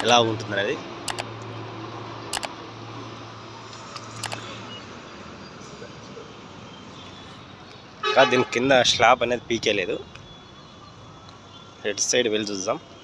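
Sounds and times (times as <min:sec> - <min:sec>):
sharp clicks: 0:00.0 - 0:00.2, 0:01.1 - 0:01.4, 0:02.3 - 0:02.6, 0:03.8 - 0:04.4.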